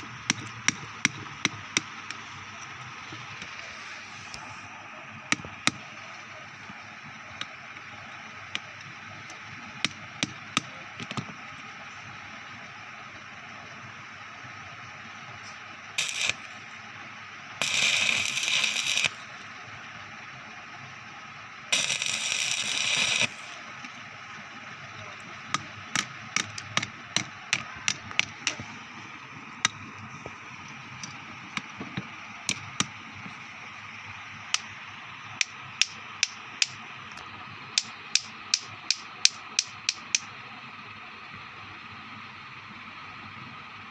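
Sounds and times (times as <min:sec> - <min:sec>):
arc welder hissing: 0:00.0 - 0:06.0, 0:15.4 - 0:19.6, 0:21.7 - 0:23.8, 0:37.8 - 0:40.3
sharp clicks: 0:37.8 - 0:40.3.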